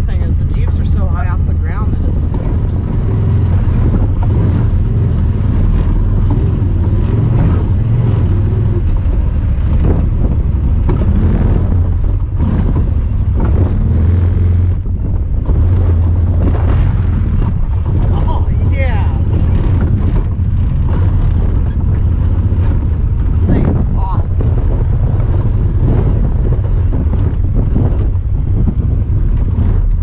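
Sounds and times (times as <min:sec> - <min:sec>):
engine droning: 0:00.0 - 0:30.0
knocks and rattles: 0:00.0 - 0:30.0.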